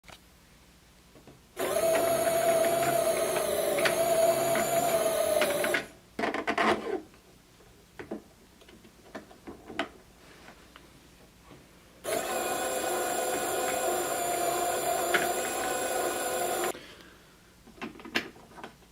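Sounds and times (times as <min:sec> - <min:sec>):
plastic gearset whirring: 0:01.6 - 0:05.9, 0:12.1 - 0:16.8.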